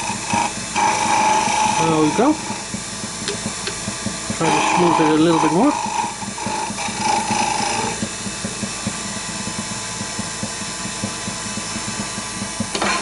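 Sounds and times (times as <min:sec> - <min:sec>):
turning tool cutting whine: 0:00.0 - 0:13.0
wood lathe running: 0:00.0 - 0:13.0.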